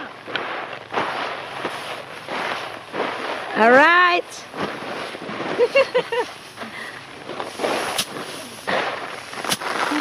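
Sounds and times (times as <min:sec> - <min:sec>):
rice bundles swishing: 0:00.0 - 0:10.0
sharp strike of rice bundle: 0:07.5 - 0:08.8, 0:09.4 - 0:10.0.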